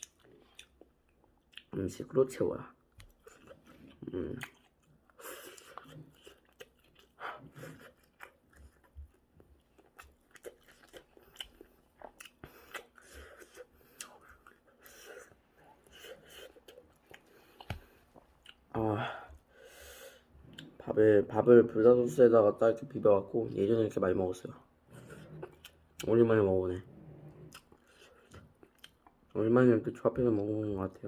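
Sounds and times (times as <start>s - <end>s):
person chewing food: 0.0s - 1.8s, 2.8s - 20.9s, 24.8s - 26.2s, 26.9s - 29.4s.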